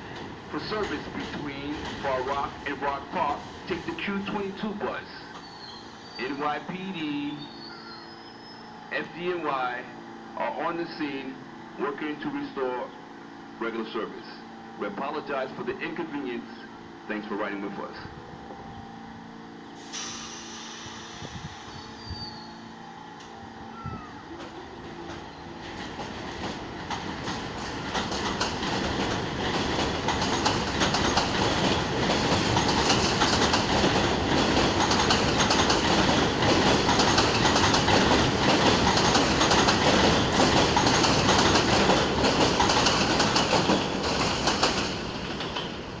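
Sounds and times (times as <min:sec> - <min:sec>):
subway train wheels clacking: 0:00.0 - 0:08.2, 0:19.8 - 0:46.0
train wheels squealing: 0:05.3 - 0:09.0, 0:19.7 - 0:24.4.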